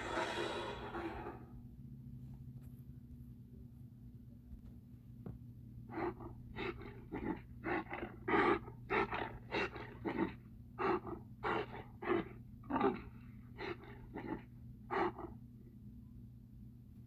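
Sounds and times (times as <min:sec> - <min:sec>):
rough animal-like calls: 0:00.0 - 0:01.4
steady low hum: 0:00.0 - 0:17.0.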